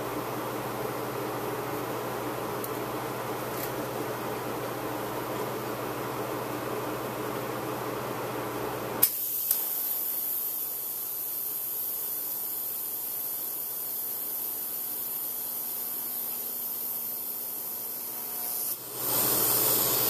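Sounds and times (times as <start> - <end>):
fan-like steady noise: 0.0 - 20.0
welding arc striking click: 9.0 - 10.0
welding arc hissing: 9.0 - 20.0.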